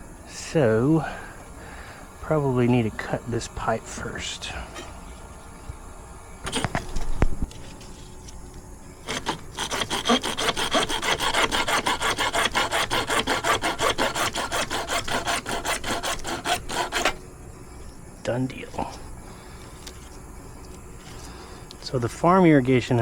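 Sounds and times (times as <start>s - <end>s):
hand saw cutting plastic pipe: 6.5s - 6.8s, 9.0s - 17.2s.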